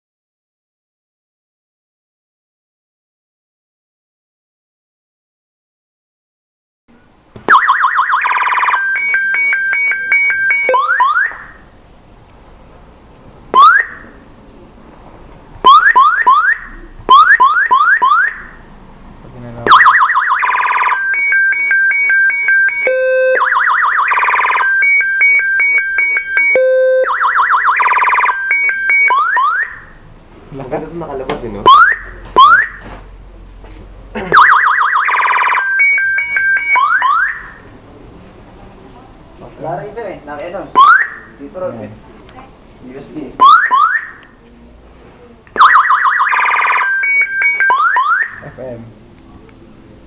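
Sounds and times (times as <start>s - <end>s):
motorcycle alarm siren: 7.5s - 11.8s, 13.5s - 14.3s, 15.6s - 18.7s, 19.6s - 30.1s, 31.6s - 32.9s, 34.3s - 37.7s, 40.7s - 41.4s, 43.4s - 44.4s, 45.6s - 48.6s.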